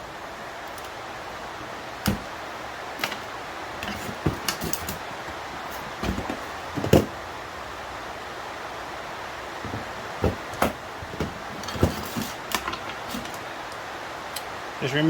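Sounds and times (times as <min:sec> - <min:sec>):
steady background hiss: 0:00.0 - 0:15.0
tools clicking and knocking: 0:03.0 - 0:07.1, 0:09.6 - 0:13.4.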